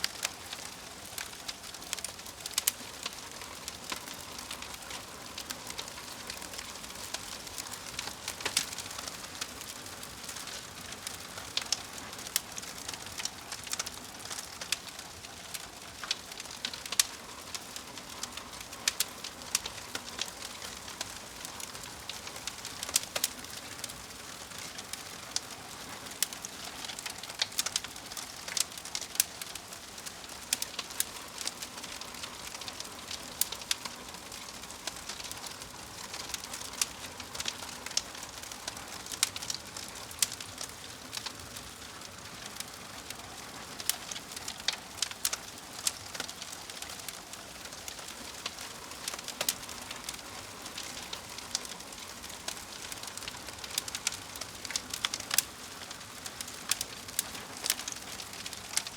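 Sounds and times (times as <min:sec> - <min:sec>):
wood fire crackling and popping: 0:00.0 - 0:58.9.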